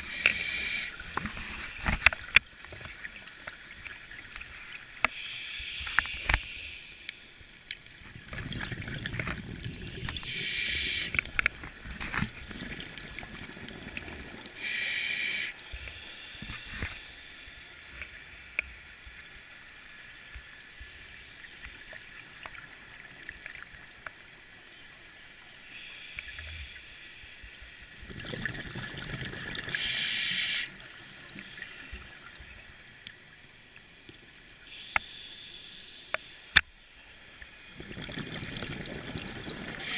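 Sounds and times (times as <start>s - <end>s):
hissing regulator breaths: 0.0s - 2.1s, 5.1s - 7.3s, 9.8s - 11.3s, 14.6s - 17.7s, 29.7s - 30.8s, 34.7s - 36.6s
bubbling rumble of exhaled air: 8.0s - 14.6s, 28.0s - 29.7s, 37.7s - 39.9s.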